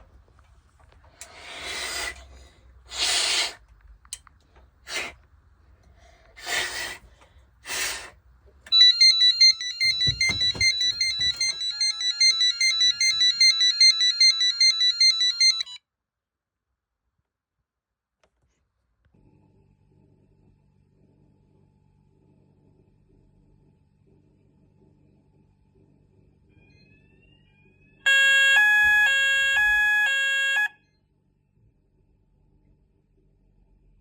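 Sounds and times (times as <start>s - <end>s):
warbling electronic alarm: 8.7s - 15.8s, 26.6s - 30.8s.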